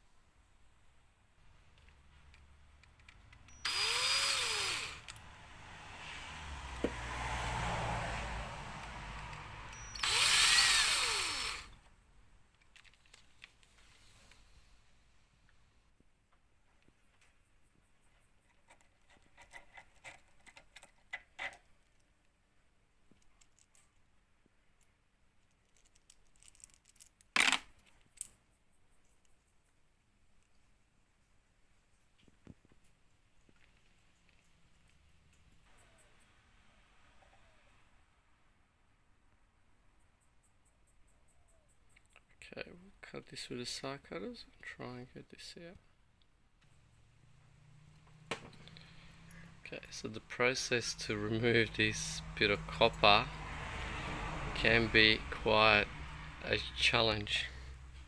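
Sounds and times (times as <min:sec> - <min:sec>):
small parts handled with clicks: 0:01.7 - 0:03.6, 0:12.5 - 0:13.8, 0:23.1 - 0:24.0, 0:24.8 - 0:29.4
power drill running: 0:03.5 - 0:05.2, 0:09.7 - 0:11.8.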